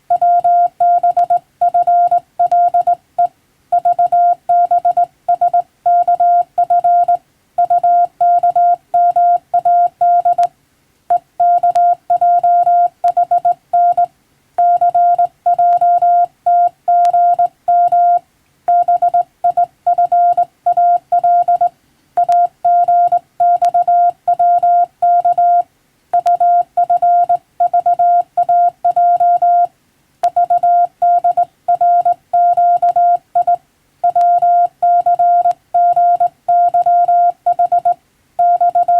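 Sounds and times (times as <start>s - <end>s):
morse code beep tone: 0.1s - 10.5s, 11.1s - 38.9s
faint clicks: 22.2s - 22.5s.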